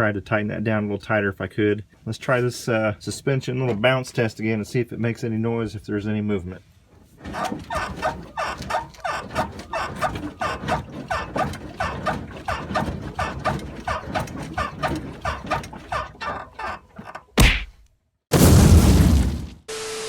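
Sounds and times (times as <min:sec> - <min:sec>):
suspension squeaking: 0:03.0 - 0:04.1, 0:06.9 - 0:17.4.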